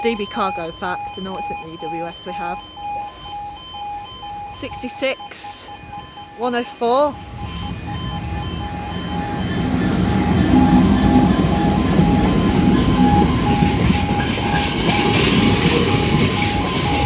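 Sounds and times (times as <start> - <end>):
level crossing alarm pulses: 0.0 - 17.0
train rumble and wheel clatter: 7.1 - 17.0.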